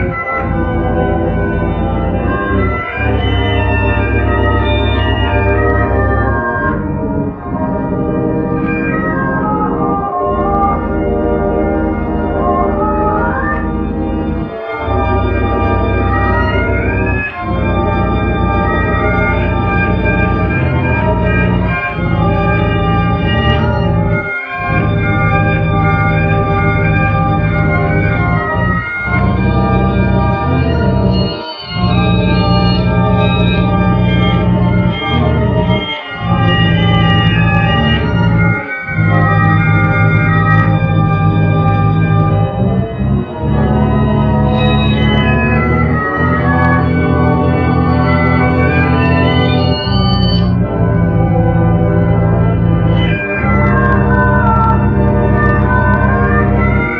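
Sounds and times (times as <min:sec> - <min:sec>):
organ-like chords: 0:00.0 - 0:56.9.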